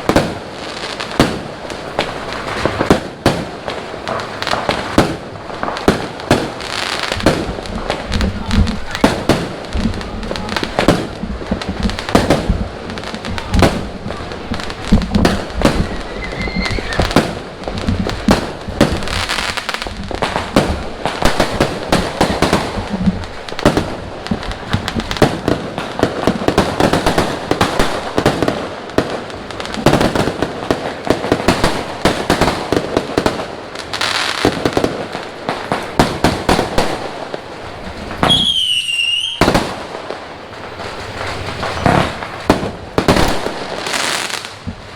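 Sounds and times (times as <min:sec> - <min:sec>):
firework whistling: 0:00.0 - 0:28.6, 0:35.6 - 0:44.9
firecrackers cracking and banging: 0:00.0 - 0:44.9.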